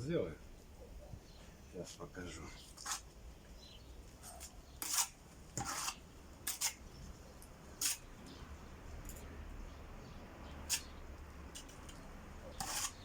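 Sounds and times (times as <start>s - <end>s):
scraping and clicking on brick: 4.3s - 6.8s, 11.5s - 13.0s.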